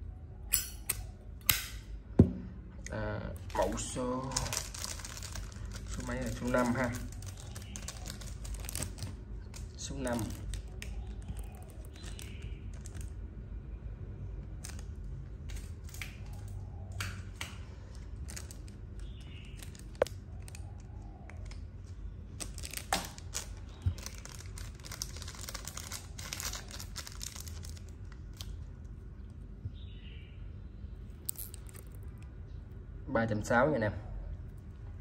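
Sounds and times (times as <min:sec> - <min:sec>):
crinkling rustle: 0:03.4 - 0:13.3, 0:17.9 - 0:29.4.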